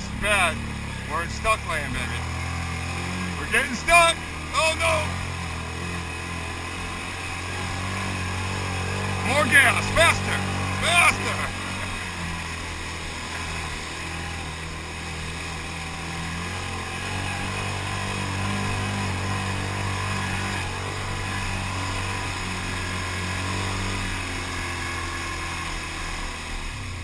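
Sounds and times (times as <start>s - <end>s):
atv engine under load: 0.0s - 27.0s.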